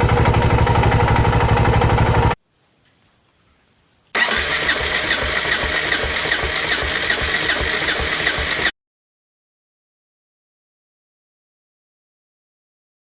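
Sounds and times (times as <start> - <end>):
motorcycle engine running: 0.0 - 2.4, 4.2 - 8.7.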